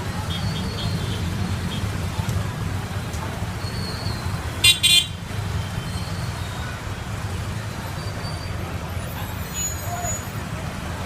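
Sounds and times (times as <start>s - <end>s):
street traffic rumble: 0.0s - 11.0s
vehicle horn toots: 4.6s - 5.2s.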